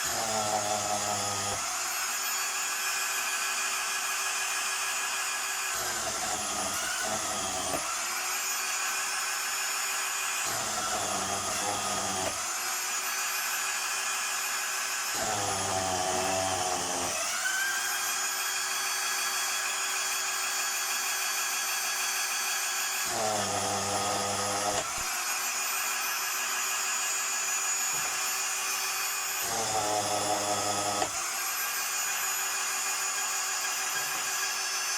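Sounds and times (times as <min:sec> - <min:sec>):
rough grinding of cutters: 0:00.0 - 0:34.9
planing machine high whine: 0:22.6 - 0:34.9.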